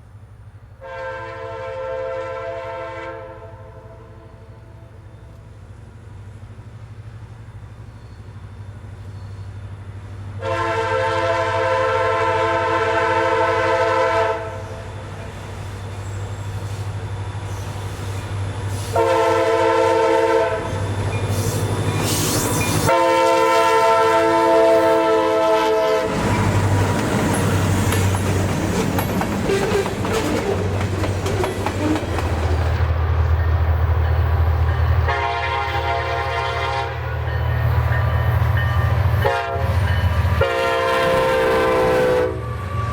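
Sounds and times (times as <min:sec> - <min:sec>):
locomotive air horn blasts: 0:00.8 - 0:05.0, 0:10.4 - 0:14.8, 0:18.7 - 0:20.8, 0:22.8 - 0:26.2, 0:35.0 - 0:37.3, 0:39.1 - 0:42.9
locomotive engine rumbling: 0:12.7 - 0:42.9
train wheels clattering on rails: 0:20.6 - 0:22.9, 0:26.0 - 0:35.6.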